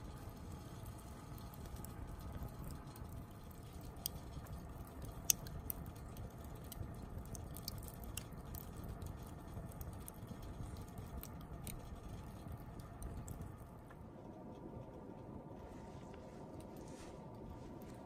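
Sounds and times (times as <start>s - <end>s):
campfire crackling and popping: 0.0s - 14.1s
low steady rumble: 0.0s - 18.0s.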